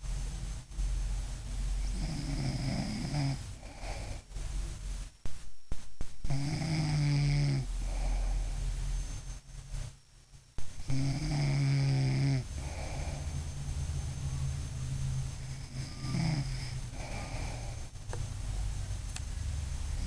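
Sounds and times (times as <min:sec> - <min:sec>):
woman snoring: 0:01.8 - 0:04.3, 0:06.3 - 0:08.6, 0:10.8 - 0:13.4, 0:15.4 - 0:17.9
soft breathing: 0:03.4 - 0:05.1, 0:07.6 - 0:09.0, 0:12.4 - 0:14.0, 0:15.4 - 0:18.7.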